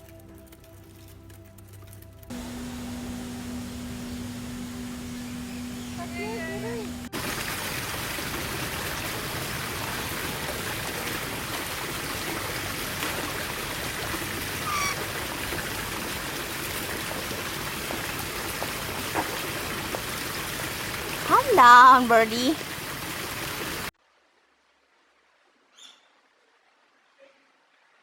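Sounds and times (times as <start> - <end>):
steady rushing noise: 2.3 - 10.4
bird squawk: 14.6 - 15.0.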